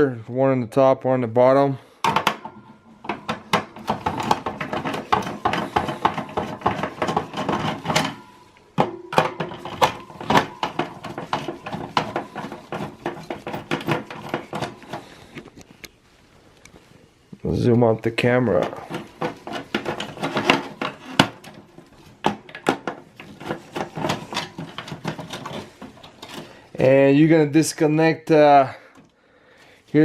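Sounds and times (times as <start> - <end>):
screwdriver clicking and scraping: 2.1 - 16.0, 18.6 - 26.8.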